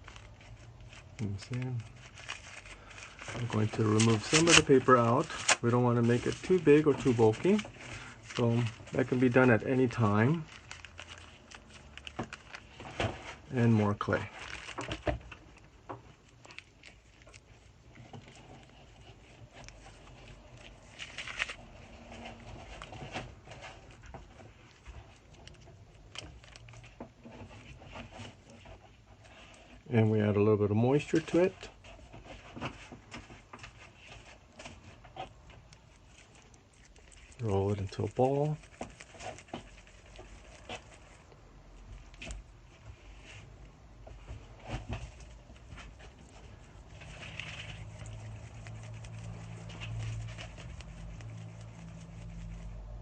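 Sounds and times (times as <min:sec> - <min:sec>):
hands rolling clay: 0:31.2 - 0:53.0.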